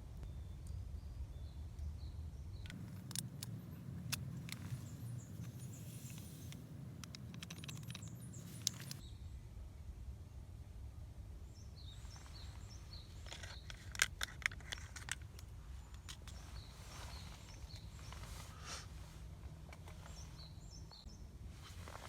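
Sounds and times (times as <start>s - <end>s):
songbird chirping: 0.0s - 9.6s, 11.4s - 22.0s
low background rumble: 0.0s - 22.0s.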